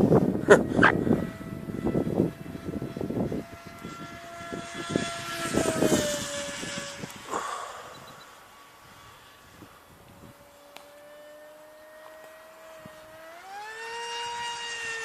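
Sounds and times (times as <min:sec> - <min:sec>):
wind buffeting microphone: 0:00.0 - 0:10.5
electric motor and propeller whining: 0:00.0 - 0:15.0.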